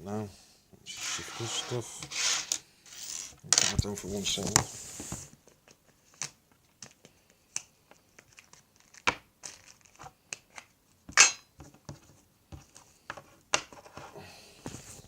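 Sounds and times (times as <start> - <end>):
plastic packaging crinkling: 8.2 - 10.0.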